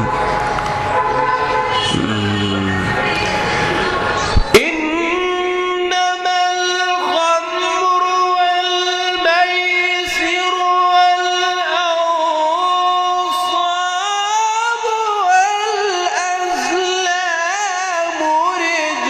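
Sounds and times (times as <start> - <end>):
person reciting melodically: 1.8 - 3.1, 4.4 - 19.0.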